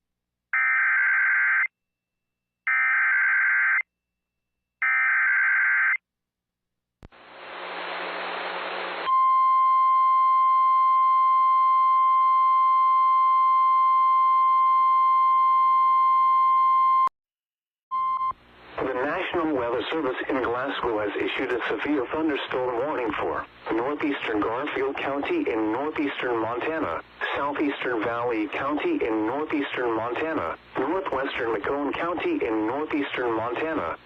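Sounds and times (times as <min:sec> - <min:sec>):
static hiss: 0:07.1 - 0:09.1.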